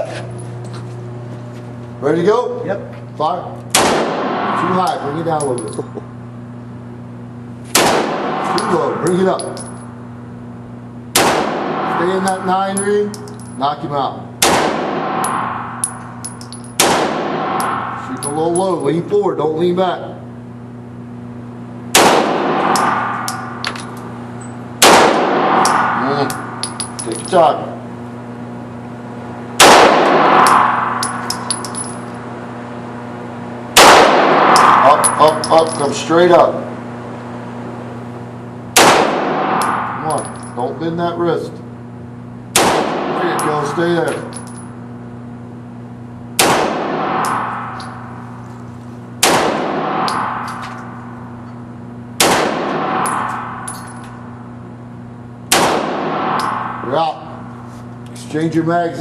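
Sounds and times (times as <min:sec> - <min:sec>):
steady low hum: 0:00.0 - 0:59.0
pistol shot echoing indoors: 0:03.7 - 0:04.8, 0:07.8 - 0:08.8, 0:11.1 - 0:12.1, 0:14.4 - 0:16.0, 0:16.8 - 0:18.3, 0:21.9 - 0:23.8, 0:24.8 - 0:26.7, 0:29.6 - 0:31.5, 0:33.8 - 0:35.2, 0:38.8 - 0:40.3, 0:42.5 - 0:44.2, 0:46.4 - 0:48.4, 0:49.2 - 0:51.4, 0:52.2 - 0:54.5, 0:55.5 - 0:57.5
metallic clinks of casings: 0:05.3 - 0:06.0, 0:08.6 - 0:09.9, 0:12.3 - 0:13.6, 0:15.2 - 0:16.8, 0:25.6 - 0:27.4, 0:30.5 - 0:32.2, 0:34.6 - 0:35.9, 0:39.6 - 0:40.6, 0:44.1 - 0:44.7, 0:53.0 - 0:54.2.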